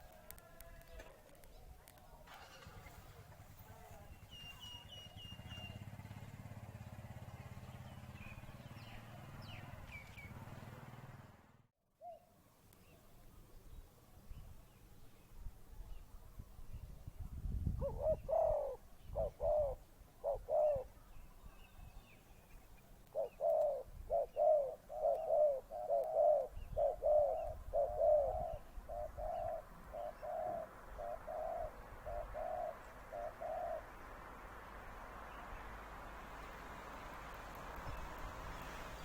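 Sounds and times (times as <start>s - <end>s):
dove cooing: 17.8s - 21.0s, 23.1s - 34.0s.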